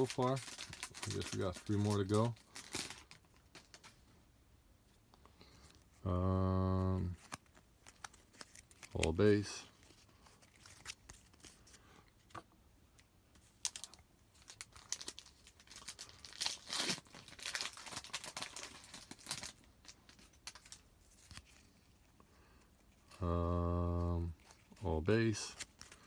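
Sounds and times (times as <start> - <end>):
foil wrapper tearing and crinkling: 0.0 - 3.9, 7.2 - 11.7, 13.4 - 21.7, 25.4 - 26.0
cards rustling: 0.0 - 4.0, 6.7 - 12.4, 13.0 - 26.0.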